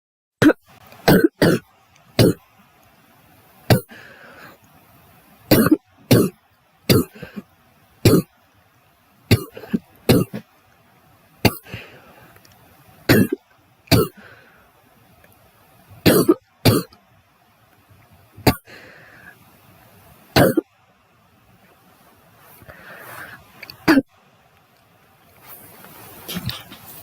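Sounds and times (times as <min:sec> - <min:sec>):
faint breathing: 0:03.9 - 0:05.2, 0:11.6 - 0:12.9, 0:14.2 - 0:15.1, 0:18.6 - 0:19.7, 0:22.4 - 0:23.7
girl coughing: 0:09.3 - 0:10.4.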